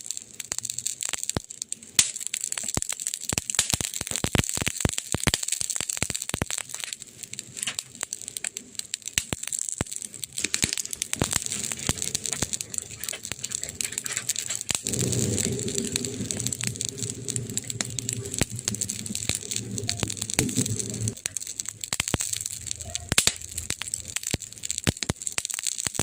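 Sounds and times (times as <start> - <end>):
wood fire crackling and popping: 0.0 - 26.0
steady low rumble: 11.0 - 24.8.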